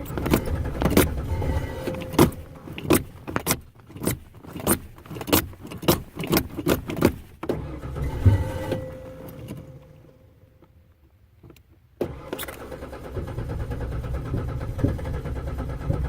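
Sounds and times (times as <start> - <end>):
sharp clicks and knocks: 0.0 - 9.9, 14.1 - 16.0.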